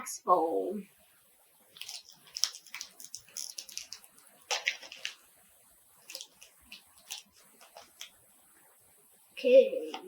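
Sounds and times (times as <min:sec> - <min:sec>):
cards and packaging rustling: 0:01.7 - 0:05.3, 0:06.0 - 0:08.2.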